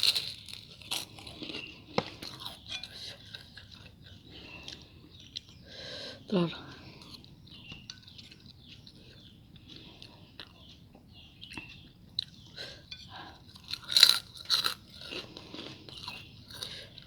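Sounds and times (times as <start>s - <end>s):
loud crunchy bites: 0.0s - 2.5s, 13.6s - 16.7s
soft chewing: 0.0s - 17.0s.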